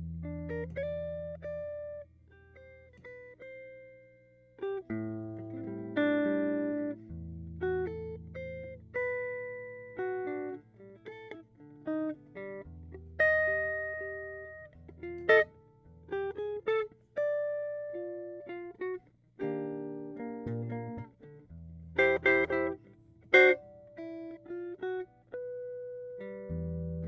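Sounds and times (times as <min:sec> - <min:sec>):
low bass notes: 0:00.0 - 0:02.0
guitar playing slow melody: 0:00.0 - 0:27.0.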